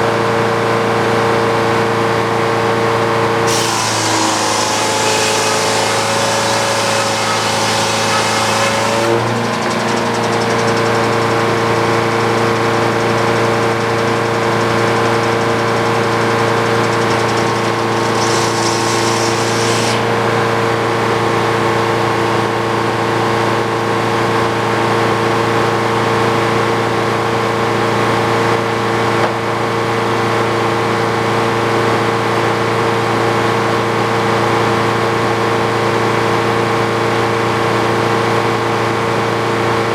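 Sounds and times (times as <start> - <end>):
sawmill hum and whine: 0.2 - 22.8.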